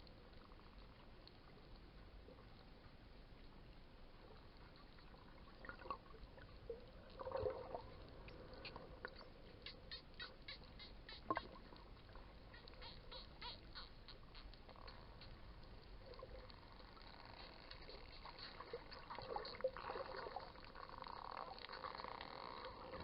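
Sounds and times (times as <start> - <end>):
dolphin buzzy squawk: 9.6 - 11.7, 12.4 - 15.1
dolphin rapid clicks: 9.6 - 11.8, 12.4 - 19.6.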